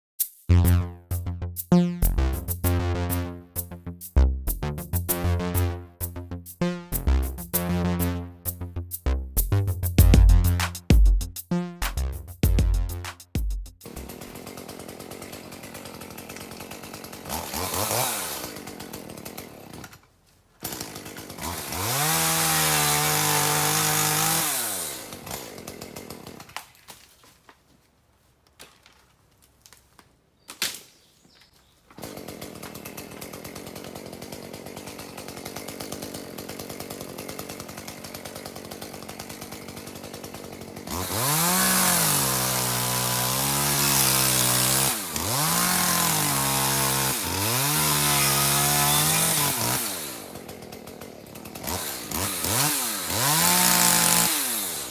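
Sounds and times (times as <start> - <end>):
chainsaw idling and revving: 13.8 - 26.7, 31.9 - 54.9.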